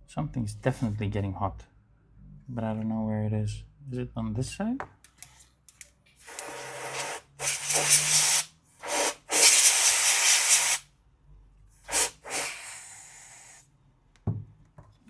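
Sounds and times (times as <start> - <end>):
aerosol can spraying: 6.2 - 10.8, 11.8 - 13.6.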